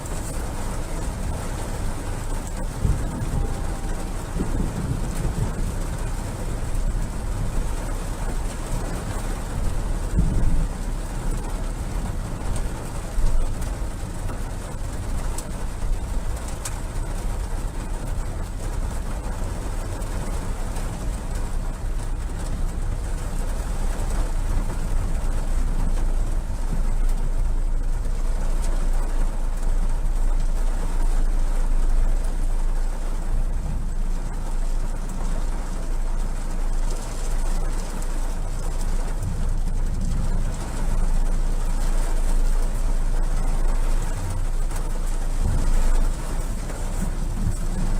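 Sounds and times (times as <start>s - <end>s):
storm wind on microphone: 0.0s - 11.1s
wind-driven rain hissing: 0.0s - 47.9s.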